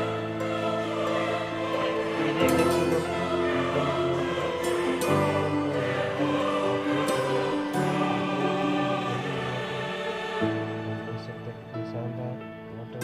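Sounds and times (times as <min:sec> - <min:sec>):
sustained chords music: 0:00.0 - 0:13.0.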